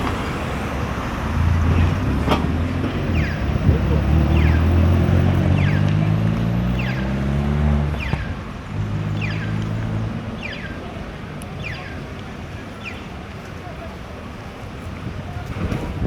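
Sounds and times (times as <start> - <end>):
vehicle engine humming: 0.0 - 12.8.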